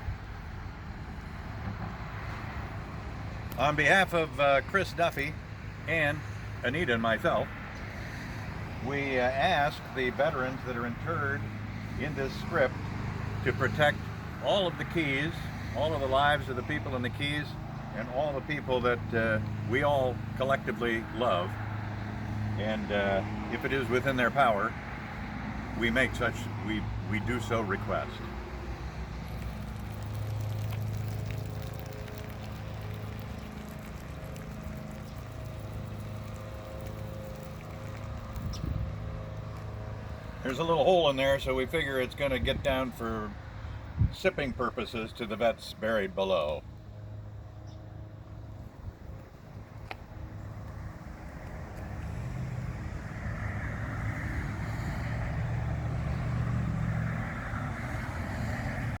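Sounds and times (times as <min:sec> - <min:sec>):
vehicle engine and tyre noise: 0:00.0 - 0:59.0
liquid splashing and fizzing: 0:27.3 - 0:40.4.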